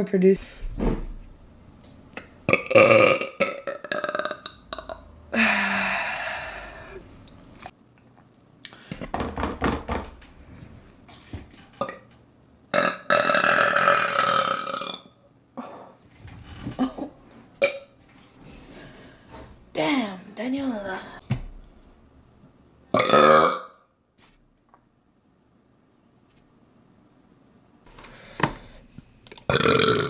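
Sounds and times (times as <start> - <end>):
woman burping: 2.2 - 6.2, 23.0 - 23.8, 29.5 - 30.0.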